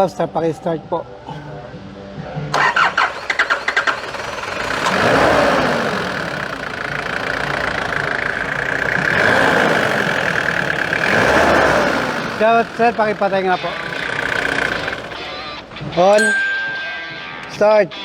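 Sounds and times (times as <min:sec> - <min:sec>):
diesel engine revving: 0:02.5 - 0:15.9
starter cranking diesel engine: 0:02.5 - 0:15.9.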